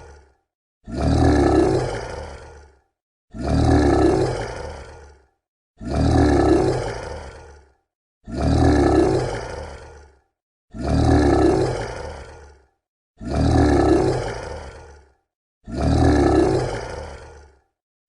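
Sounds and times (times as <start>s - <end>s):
monster roar: 0.0s - 17.7s.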